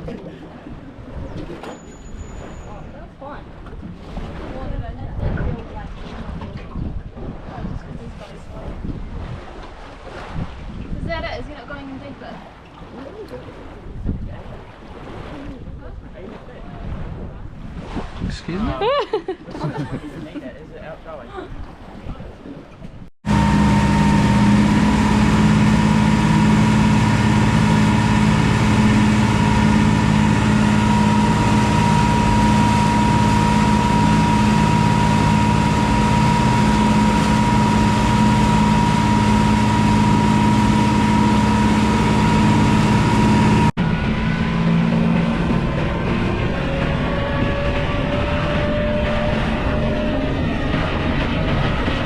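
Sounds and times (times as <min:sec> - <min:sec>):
boat engine running: 0:00.0 - 0:18.7, 0:21.5 - 0:52.0.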